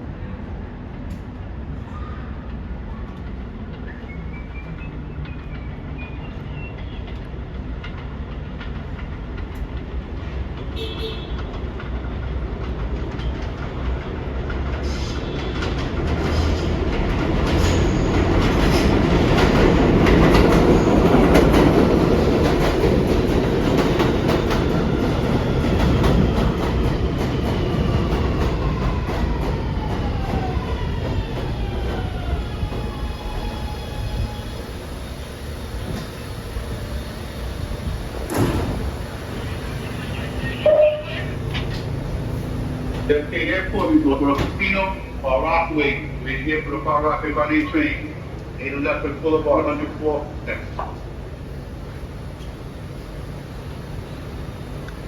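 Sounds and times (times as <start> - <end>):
train running noise: 0.0 - 55.0
wheels clicking over rail joints: 7.1 - 14.8
subway motor whine: 13.5 - 55.0.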